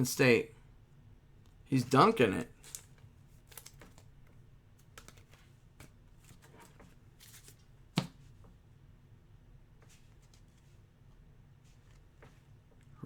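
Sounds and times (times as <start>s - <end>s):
cards sliding and rustling: 4.9s - 7.6s.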